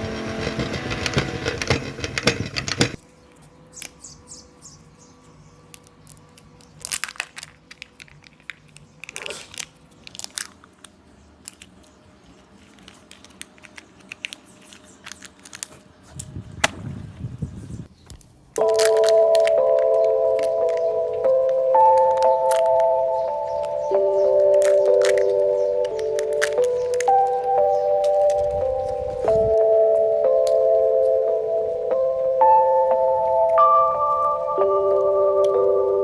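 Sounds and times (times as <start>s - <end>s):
music: 0.0s - 2.0s, 18.6s - 36.0s
packaging crinkling and tearing: 5.7s - 11.9s, 12.5s - 16.0s, 18.6s - 20.6s, 24.4s - 27.4s.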